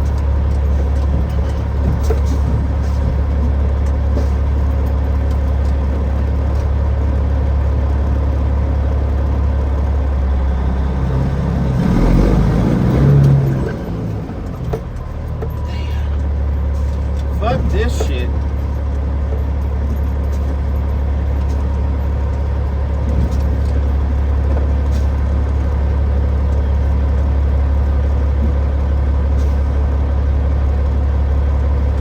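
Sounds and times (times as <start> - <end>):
diesel truck engine revving: 7.8 - 30.0.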